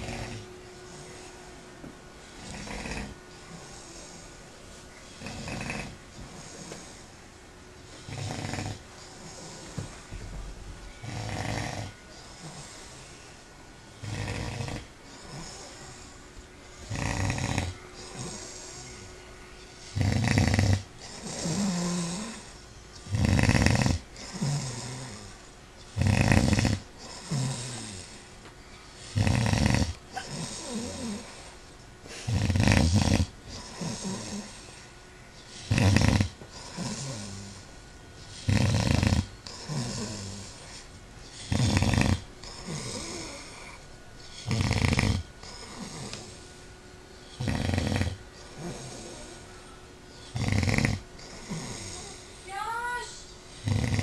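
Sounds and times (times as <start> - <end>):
loud snoring: 0.0 - 1.1, 2.4 - 4.3, 5.2 - 7.1, 8.0 - 9.9, 11.0 - 13.1, 14.0 - 16.0, 16.8 - 19.1, 19.9 - 22.5, 23.1 - 28.2, 29.0 - 31.5, 32.1 - 34.8, 35.5 - 37.7, 38.3 - 46.4, 47.3 - 49.4, 50.1 - 52.2, 53.5 - 54.0.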